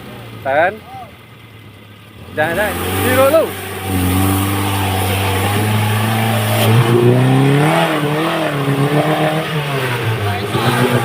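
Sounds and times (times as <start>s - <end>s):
car engine revving under load: 1.4s - 11.0s.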